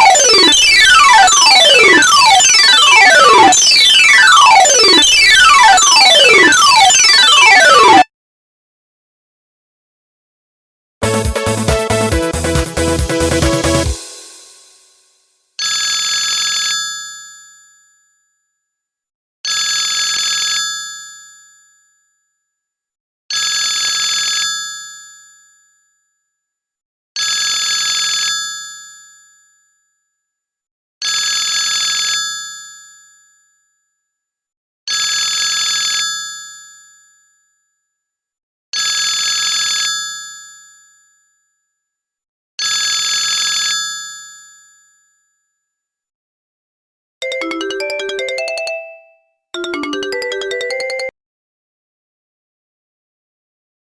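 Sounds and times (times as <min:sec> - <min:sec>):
telephone bell ringtone: 0:00.0 - 0:08.1, 0:15.6 - 0:17.9, 0:42.6 - 0:45.2, 0:47.2 - 0:51.2.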